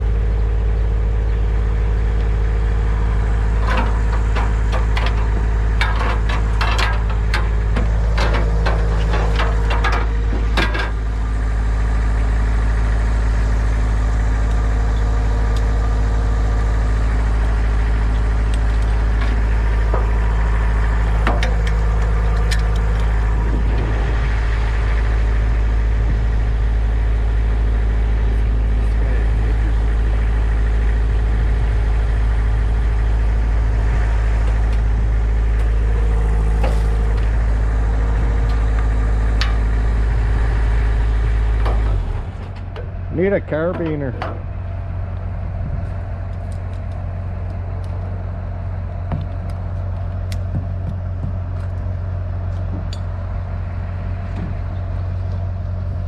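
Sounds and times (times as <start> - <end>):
engine idling: 0.0 - 56.0
sharp knocks and clatter: 3.6 - 11.1, 18.6 - 23.9, 41.5 - 44.5, 49.1 - 51.8.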